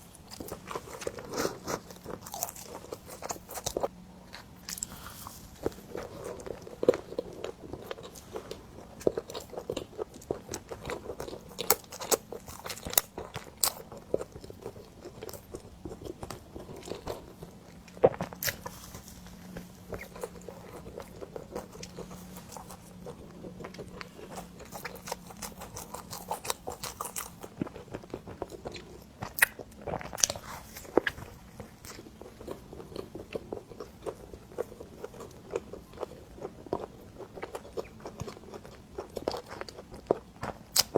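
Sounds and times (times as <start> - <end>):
chewing and biting bread: 0.0 - 40.9.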